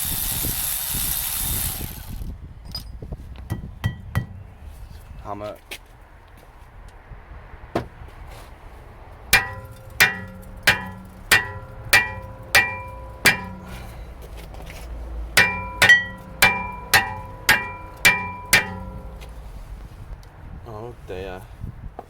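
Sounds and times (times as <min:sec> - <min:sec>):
hammer striking metal brake disc: 0:03.5 - 0:04.6, 0:09.4 - 0:14.1, 0:15.4 - 0:19.4.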